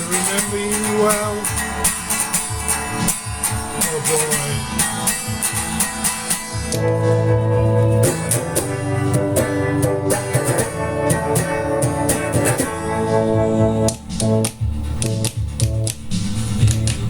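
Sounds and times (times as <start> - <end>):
instrumental guitar music: 0.0 - 17.0.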